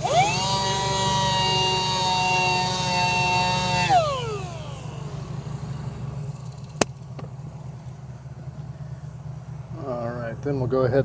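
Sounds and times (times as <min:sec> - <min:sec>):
power sander whining: 0:00.0 - 0:09.0
low steady hum: 0:00.0 - 0:11.0.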